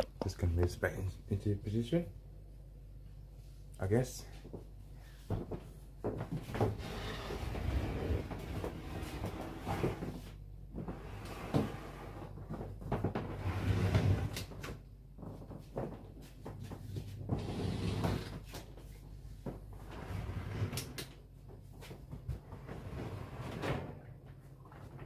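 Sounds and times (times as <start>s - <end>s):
fridge scraping across floor: 6.6s - 12.4s, 13.2s - 14.4s, 17.3s - 18.4s, 19.8s - 20.9s, 22.5s - 24.0s.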